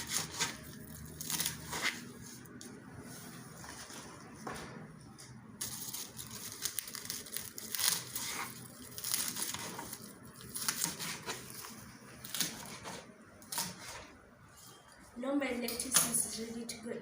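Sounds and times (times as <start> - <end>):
knife cutting crisp lettuce: 0.0 - 2.2, 5.6 - 14.1.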